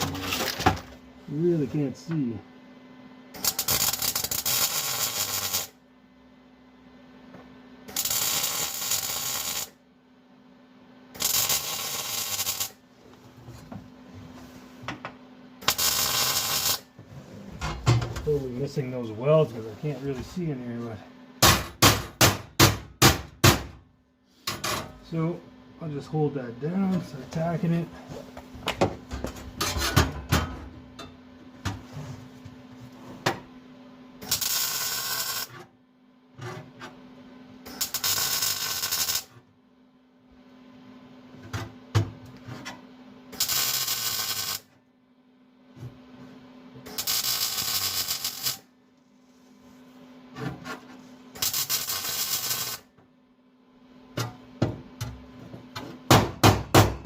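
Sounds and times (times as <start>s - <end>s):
steady low hum: 0.0s - 57.0s
welding bursts: 3.4s - 5.8s, 7.9s - 9.8s, 11.2s - 12.8s, 15.6s - 16.8s, 34.2s - 35.5s, 37.7s - 39.3s, 43.4s - 44.7s, 46.9s - 48.7s, 51.4s - 52.9s.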